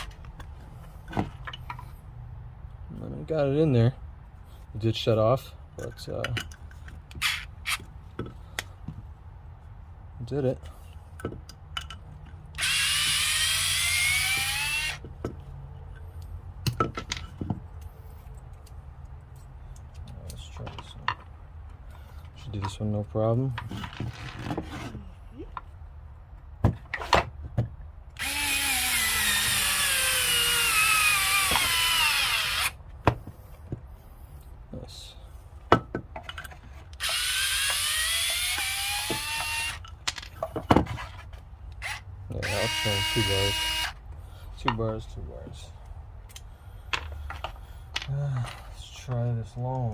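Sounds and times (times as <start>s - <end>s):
electric screwdriver motor whine: 12.6s - 15.0s, 28.2s - 32.8s, 37.0s - 39.8s, 41.8s - 44.0s.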